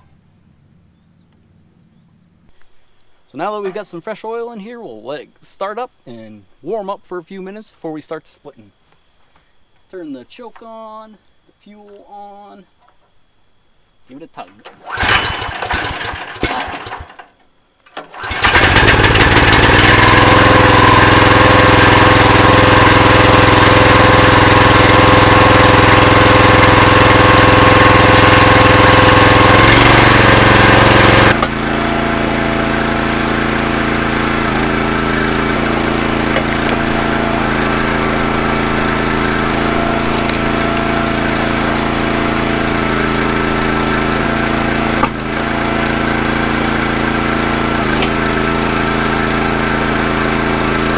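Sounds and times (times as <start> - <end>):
engine pull-start: 14.5 - 50.7
engine running: 14.7 - 17.3, 18.0 - 50.9.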